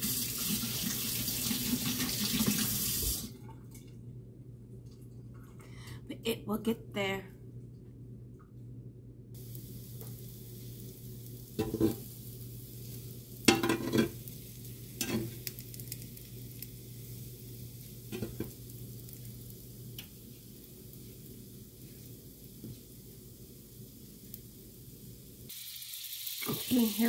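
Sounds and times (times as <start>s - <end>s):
food sizzling in a frying pan: 0.0s - 3.2s, 9.4s - 27.0s
constant low hum: 3.3s - 25.5s
utensil clattering against pan: 13.5s - 14.2s.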